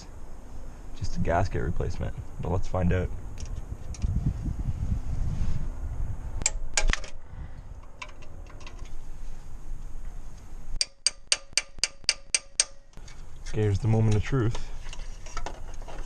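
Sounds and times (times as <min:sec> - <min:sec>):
socket ratchet clicking: 0:10.8 - 0:13.0.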